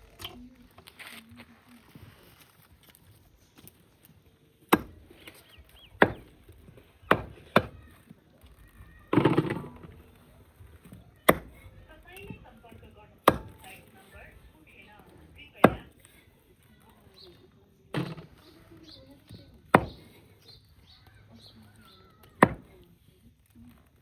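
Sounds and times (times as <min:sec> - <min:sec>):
chopping on a wooden board: 0:04.7 - 0:05.4, 0:06.0 - 0:07.9, 0:11.2 - 0:11.6, 0:13.2 - 0:13.7, 0:15.6 - 0:16.0, 0:19.7 - 0:20.2, 0:22.3 - 0:22.8.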